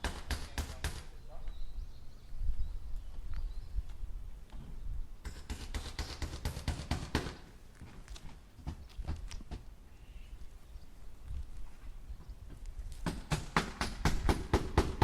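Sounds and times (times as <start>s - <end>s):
hammer striking nails into wood: 0.0s - 1.1s, 13.0s - 15.0s.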